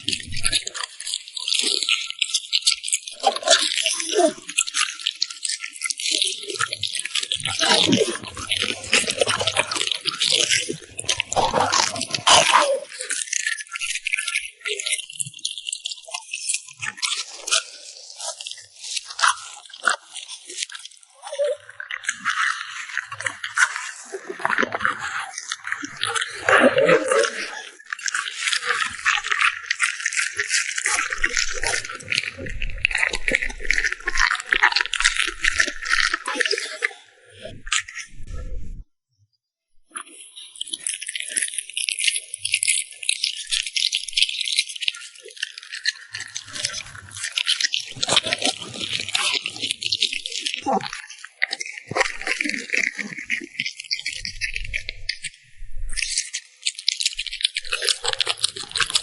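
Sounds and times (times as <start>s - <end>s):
dog chewing food: 44.2s - 54.7s, 56.9s - 59.0s.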